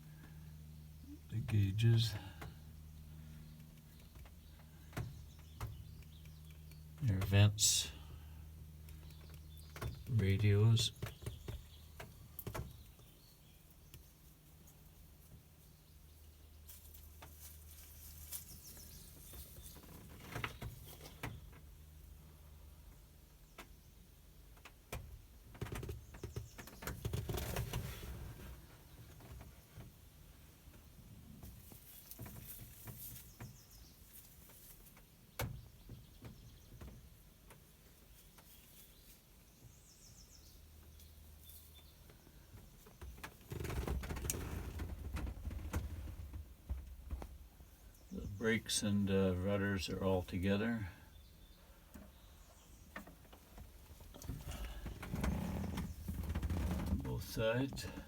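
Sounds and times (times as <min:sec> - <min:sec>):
low steady hum: 0:00.0 - 0:25.5
faint clicks and rustles: 0:16.6 - 0:22.0, 0:24.4 - 0:30.0, 0:30.6 - 0:39.4, 0:40.8 - 0:48.2, 0:51.6 - 0:58.0.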